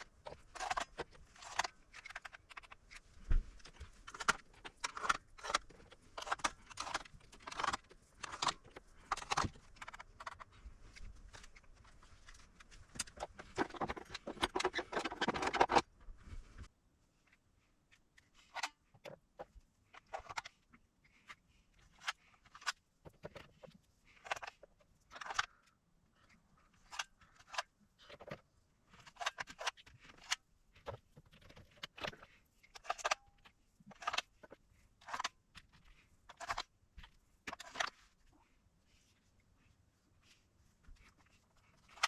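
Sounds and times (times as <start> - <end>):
small tools clicking and clinking: 3.6 - 15.9.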